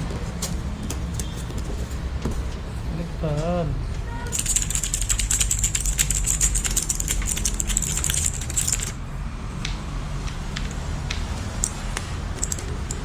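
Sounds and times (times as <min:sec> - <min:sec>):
fast typing on mechanical keyboard: 0:04.3 - 0:09.0, 0:11.6 - 0:13.0.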